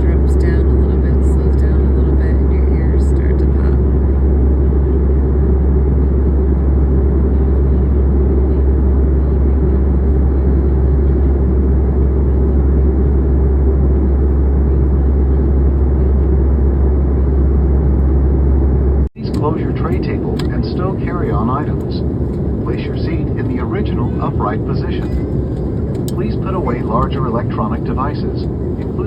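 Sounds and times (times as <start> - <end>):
airliner cabin engine roar: 0.0 - 29.0.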